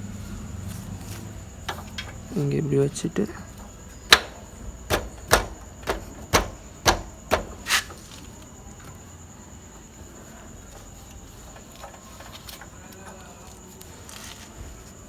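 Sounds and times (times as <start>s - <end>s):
hammer tapping on metal wheel: 3.6s - 8.0s.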